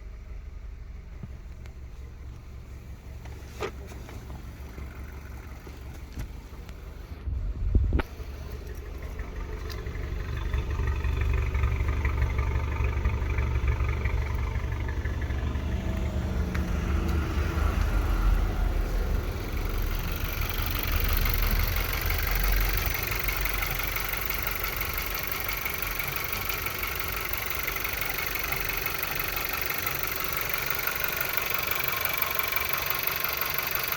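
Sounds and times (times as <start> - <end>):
car engine idling: 0.0 - 33.9.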